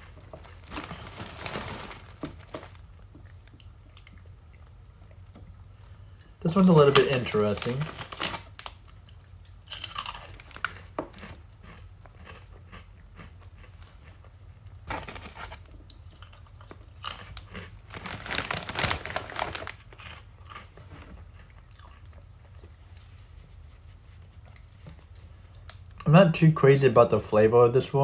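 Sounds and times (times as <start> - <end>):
person crunching snacks: 6.5 - 14.3, 14.9 - 22.2.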